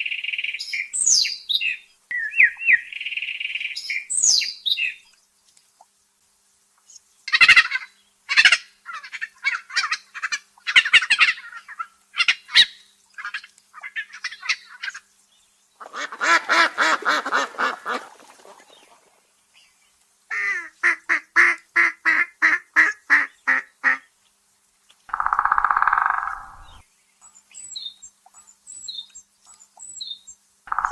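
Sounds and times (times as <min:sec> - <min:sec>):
bird chirping calls: 0:00.0 - 0:05.3, 0:25.1 - 0:30.9.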